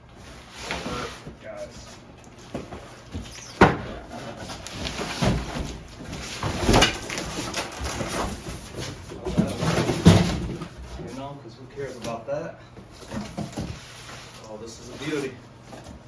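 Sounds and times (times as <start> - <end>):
cardboard rustling and scraping: 0.1 - 12.2, 13.0 - 16.0.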